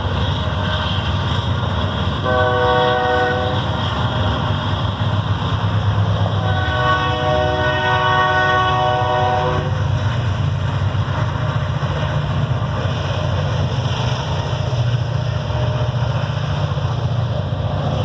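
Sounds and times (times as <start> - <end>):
freight train rumbling past: 0.0 - 18.0
train horn chord: 2.2 - 4.4, 6.0 - 9.9.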